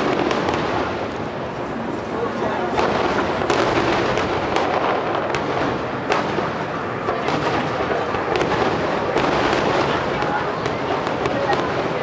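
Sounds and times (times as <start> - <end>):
fireworks bursting with booms: 0.0 - 1.6, 2.4 - 12.0
sharp fireworks cracks: 0.0 - 12.0.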